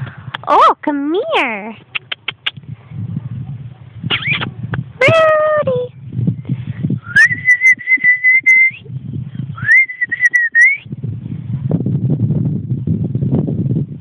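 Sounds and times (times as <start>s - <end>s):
person whistling: 7.0s - 8.8s, 9.6s - 10.9s.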